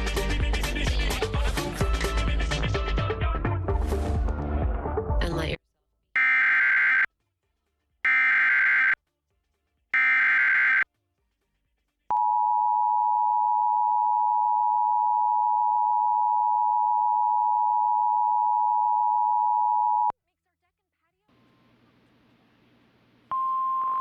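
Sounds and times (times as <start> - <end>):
buzzing digital data tones: 8.1 - 9.0, 10.0 - 10.8.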